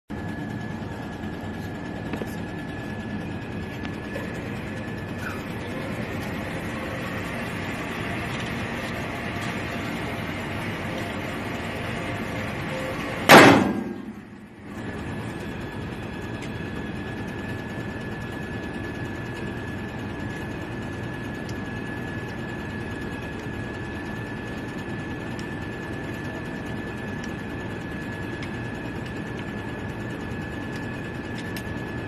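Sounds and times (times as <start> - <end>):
revolver gunshot: 13.3 - 14.1.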